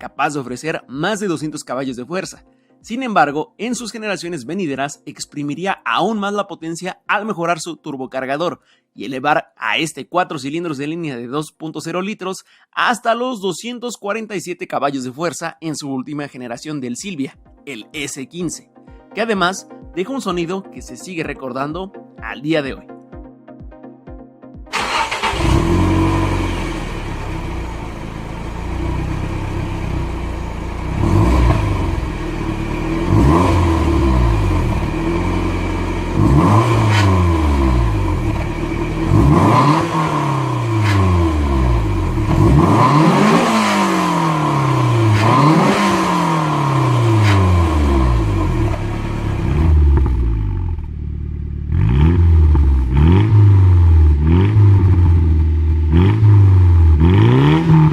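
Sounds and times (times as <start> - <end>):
car engine revving: 24.7 - 57.9.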